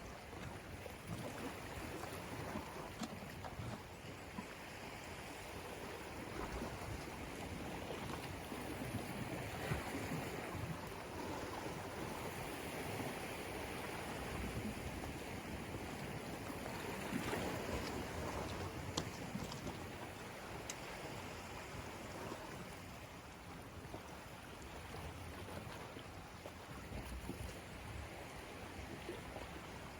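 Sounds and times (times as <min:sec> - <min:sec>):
sea waves washing: 0:04.4 - 0:26.2.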